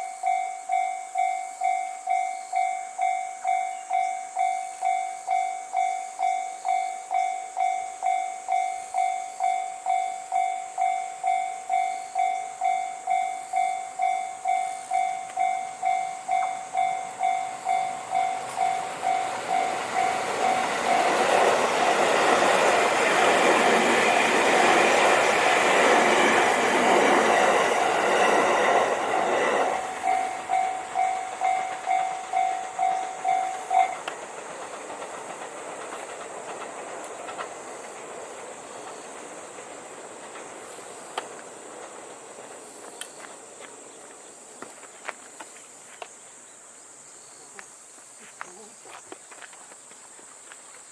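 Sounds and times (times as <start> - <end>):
level crossing warning bell ringing: 0.0 - 34.7
electric train passing: 0.0 - 47.5.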